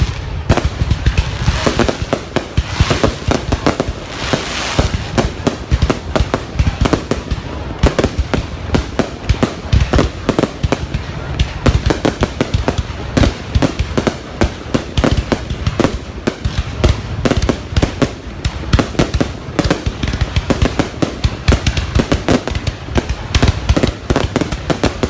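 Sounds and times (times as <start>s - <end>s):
fireworks bangs: 0.0s - 25.0s.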